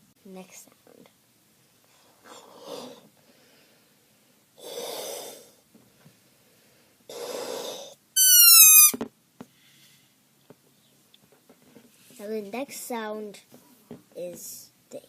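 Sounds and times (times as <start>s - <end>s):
person blowing up balloon: 4.6s - 5.6s, 7.1s - 9.0s
balloon neck squealing: 8.2s - 9.0s.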